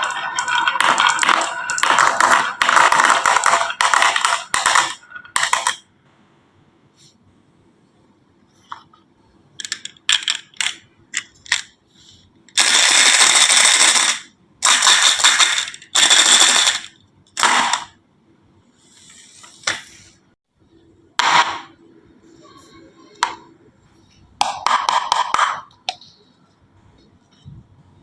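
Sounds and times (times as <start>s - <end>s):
marbles clicking and clattering: 0.0s - 5.8s, 12.6s - 16.9s
marbles rolling along track: 0.0s - 5.8s, 12.6s - 18.0s.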